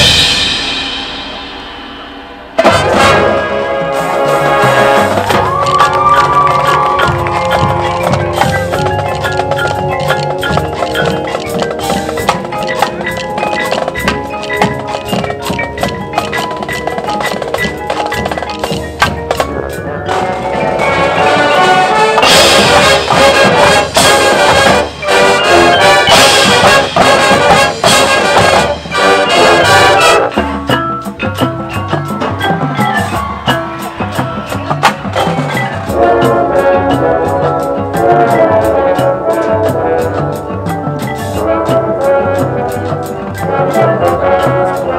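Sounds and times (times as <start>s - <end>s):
marching band playing: 0.0s - 44.9s.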